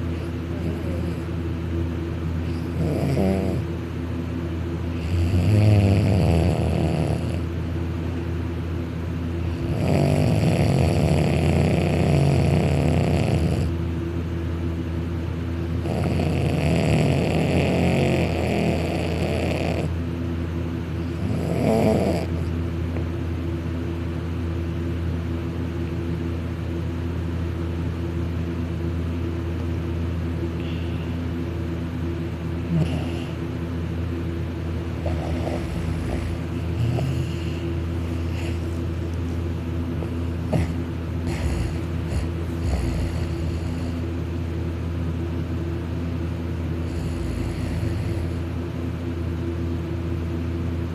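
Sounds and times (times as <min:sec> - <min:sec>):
steady low hum: 0:00.0 - 0:50.9
person snoring loudly: 0:02.5 - 0:03.7, 0:05.0 - 0:07.5, 0:09.6 - 0:13.7, 0:15.8 - 0:20.0, 0:21.1 - 0:22.5, 0:32.7 - 0:33.4, 0:35.0 - 0:38.7, 0:40.5 - 0:44.0, 0:46.8 - 0:48.4.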